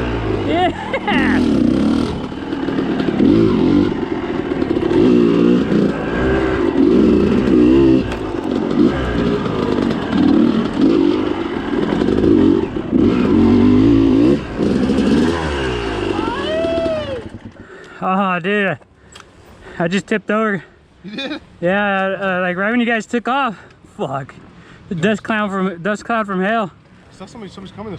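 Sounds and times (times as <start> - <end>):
two-stroke dirt bike engine revving: 0.0 - 17.5.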